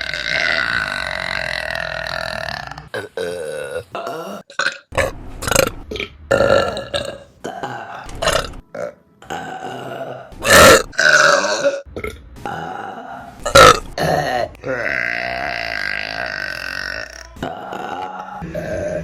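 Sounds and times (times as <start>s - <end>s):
woman burping: 6.0s - 19.0s.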